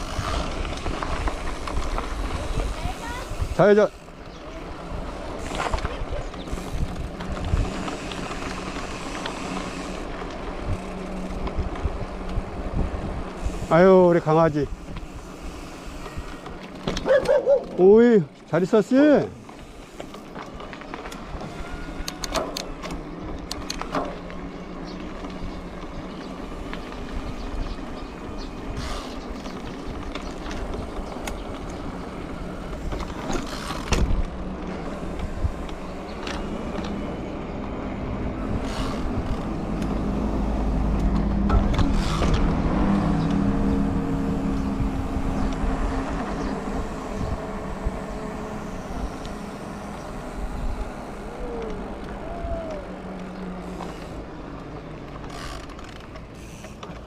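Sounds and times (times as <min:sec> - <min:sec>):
wind noise: 0:00.0 - 0:03.7, 0:04.4 - 0:17.7, 0:24.7 - 0:54.2
rolling noise while riding: 0:00.0 - 0:57.0
vehicle engine passing: 0:36.4 - 0:55.6.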